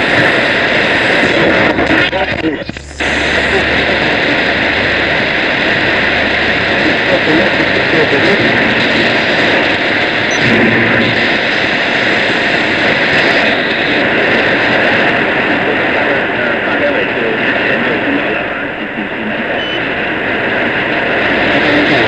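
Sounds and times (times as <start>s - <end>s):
loud radio hiss: 0.0s - 22.0s
faint voice on radio: 1.1s - 9.1s, 13.2s - 19.9s, 21.5s - 22.0s.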